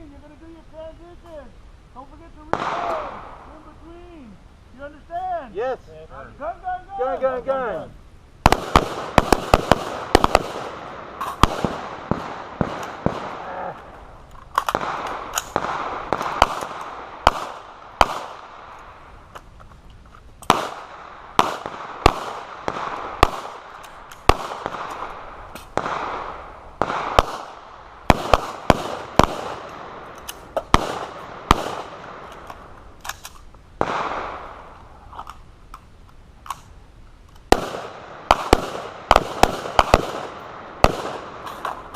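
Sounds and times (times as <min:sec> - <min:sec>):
gunshots with echo: 0:08.5 - 0:13.8, 0:20.5 - 0:30.0, 0:30.7 - 0:32.3, 0:37.5 - 0:41.4.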